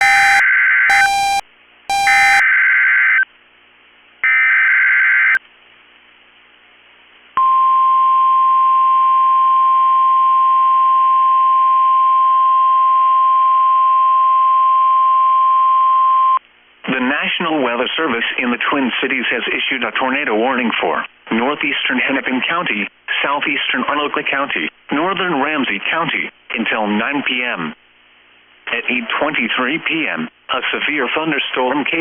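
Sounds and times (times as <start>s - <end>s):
digital data tone bursts: 0.0s - 2.5s
steady warning alarm tone: 0.0s - 2.5s.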